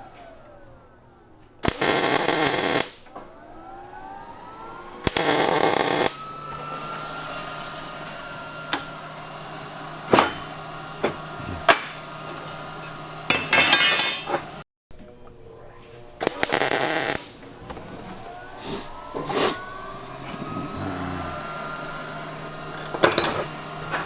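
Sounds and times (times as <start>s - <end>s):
power tool motor humming: 1.6s - 14.6s, 15.9s - 24.0s
power tool grinding steel: 1.7s - 14.6s, 16.1s - 24.0s
metal parts clinking: 13.3s - 14.5s, 22.8s - 24.0s.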